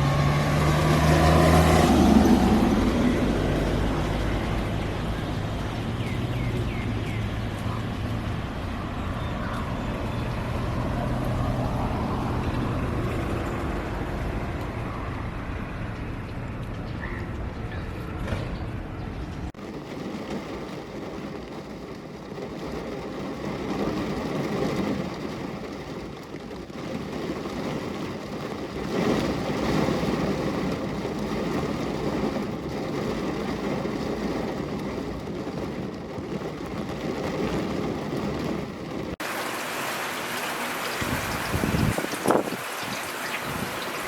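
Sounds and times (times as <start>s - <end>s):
steady rain: 19.6s - 44.0s.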